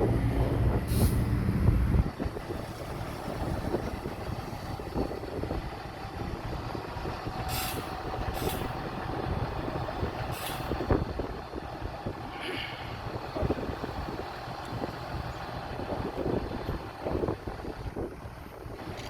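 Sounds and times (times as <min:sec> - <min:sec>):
diesel engine running: 0:00.0 - 0:19.0
short hisses: 0:07.5 - 0:08.7.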